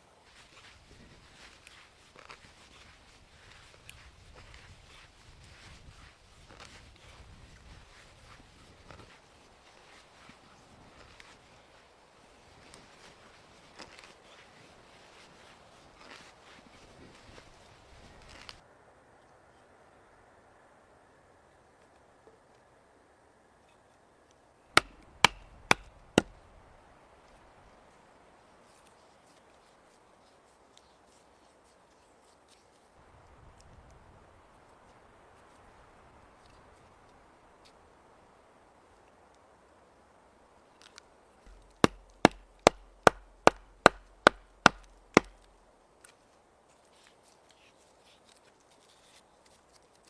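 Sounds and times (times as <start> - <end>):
axe chopping wood: 24.7 - 26.4, 41.5 - 45.5.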